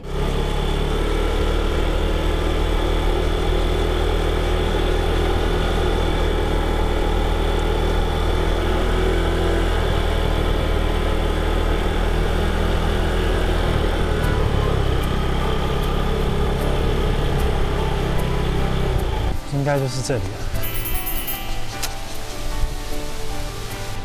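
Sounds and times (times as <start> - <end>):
car engine humming: 0.0 - 19.6.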